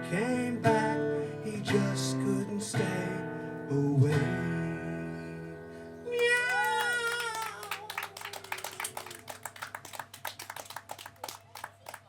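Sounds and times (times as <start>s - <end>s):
acoustic guitar strumming: 0.0s - 6.0s.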